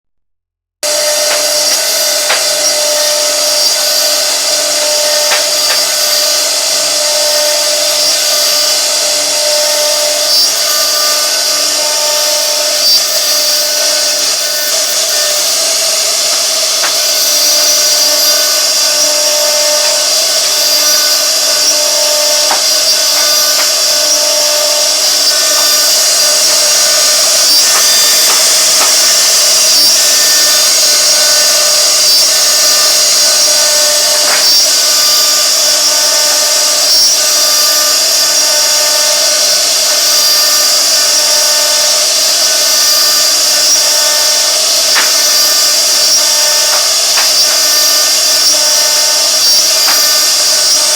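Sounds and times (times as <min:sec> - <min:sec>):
router spindle whining: 0:00.8 - 0:50.9.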